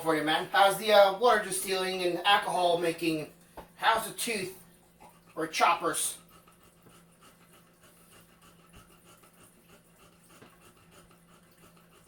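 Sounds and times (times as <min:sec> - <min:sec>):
faint low hum: 0:00.0 - 0:12.0
quick rhythmic breaths: 0:06.0 - 0:12.0.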